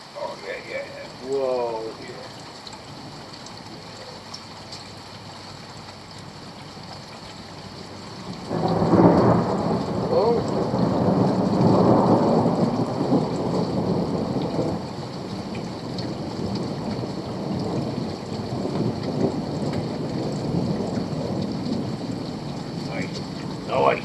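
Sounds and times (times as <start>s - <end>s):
rain hissing: 0.0s - 24.0s
thunder rumbling: 7.7s - 24.0s.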